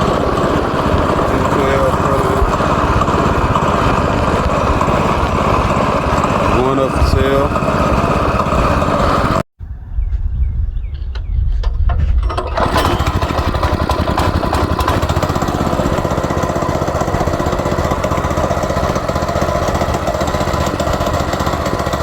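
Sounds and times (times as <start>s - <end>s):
small engine running: 0.0s - 9.5s, 12.2s - 22.0s.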